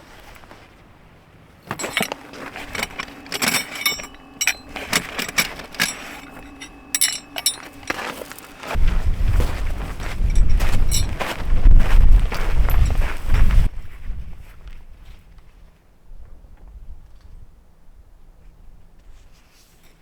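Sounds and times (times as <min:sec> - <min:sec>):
short metallic rings: 0:01.7 - 0:08.8, 0:10.2 - 0:11.2
small hard objects clinking: 0:01.7 - 0:08.8
wind buffeting microphone: 0:08.6 - 0:14.4.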